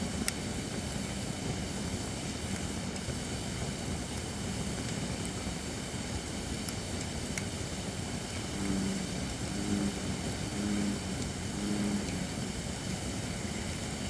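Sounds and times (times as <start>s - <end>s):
campfire crackling and popping: 0.0s - 14.0s
steady rushing hiss: 0.0s - 14.0s
low droning sound: 8.5s - 12.4s.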